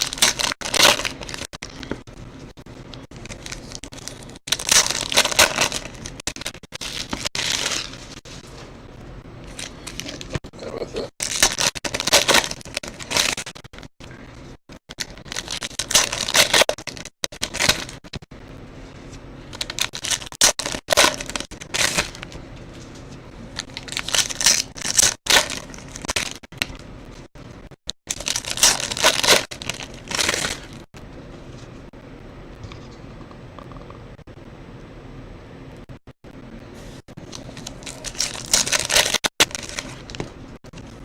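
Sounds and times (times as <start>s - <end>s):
foil wrappers torn and crinkled: 0.0s - 2.0s, 2.9s - 8.3s, 9.4s - 13.9s, 14.9s - 18.3s, 19.5s - 22.4s, 23.4s - 26.8s, 28.0s - 30.9s, 37.2s - 40.4s.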